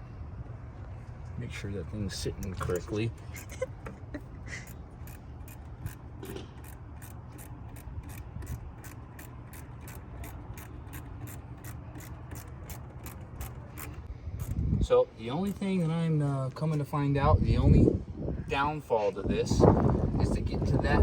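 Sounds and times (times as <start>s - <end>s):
ratchet wrench clicking: 4.5s - 14.6s.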